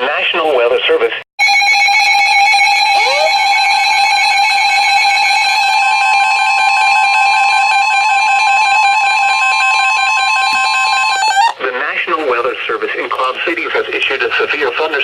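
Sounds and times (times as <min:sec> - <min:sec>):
steady electronic alarm tone: 0:01.4 - 0:11.6.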